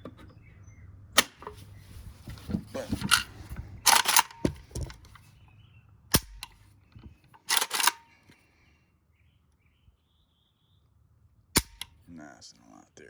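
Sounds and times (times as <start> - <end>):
rifle metal clacks: 2.9 - 5.2, 6.1 - 6.6, 7.2 - 8.1, 11.6 - 11.9.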